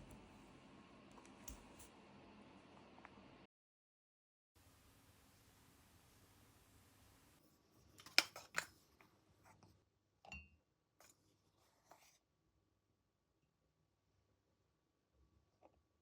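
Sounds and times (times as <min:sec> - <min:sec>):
objects clicking and tapping: 0:08.0 - 0:08.8.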